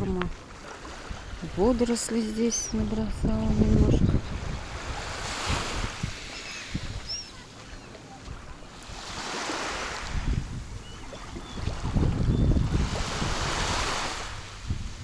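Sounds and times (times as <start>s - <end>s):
sea waves breaking on shore: 0.0s - 15.0s
wind rumbling on microphone: 0.0s - 15.0s
faint bird calls: 6.2s - 8.7s.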